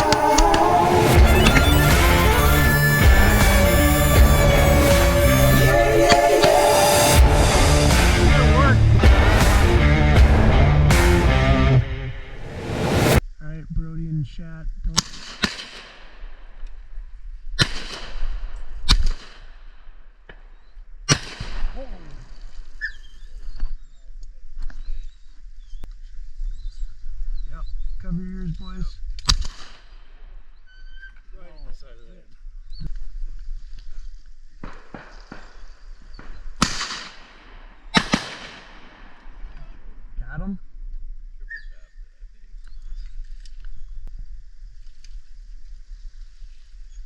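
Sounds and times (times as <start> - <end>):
shotgun shots: 15.0 - 16.5, 17.6 - 19.9, 21.1 - 22.0, 34.6 - 39.8.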